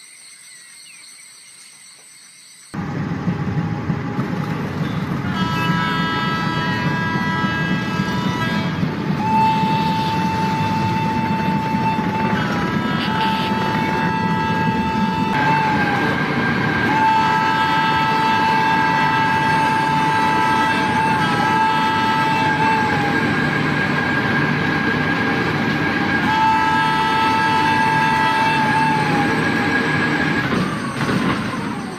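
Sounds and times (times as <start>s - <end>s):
running train rumble: 2.6s - 31.9s
train horn: 2.8s - 31.9s.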